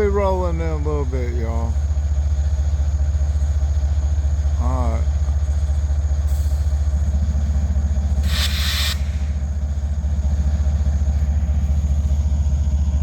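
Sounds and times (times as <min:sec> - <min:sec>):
diesel locomotive idling: 0:00.0 - 0:13.0
short hiss: 0:08.2 - 0:09.4.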